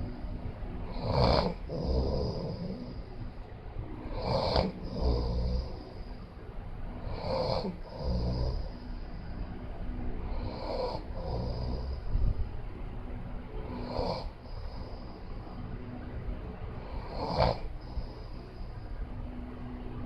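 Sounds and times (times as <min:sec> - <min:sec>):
man snoring loudly: 0:00.9 - 0:03.0, 0:04.1 - 0:05.8, 0:07.1 - 0:08.7, 0:10.3 - 0:12.0, 0:13.7 - 0:14.9, 0:16.8 - 0:18.2.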